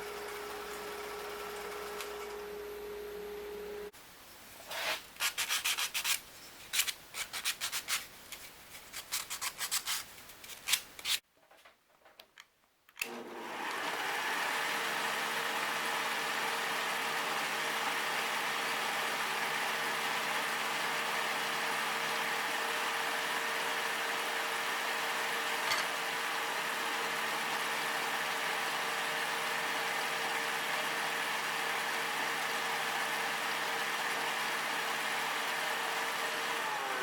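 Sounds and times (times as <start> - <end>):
hand sanding wood: 4.7 - 6.2.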